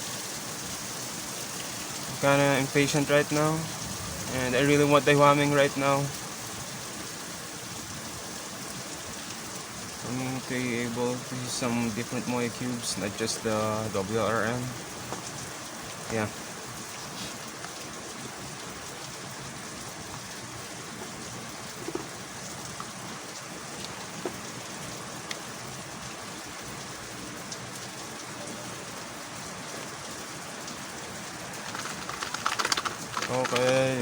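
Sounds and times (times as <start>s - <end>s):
steady rain falling: 0.0s - 34.0s
rustling and clicks: 31.4s - 34.0s.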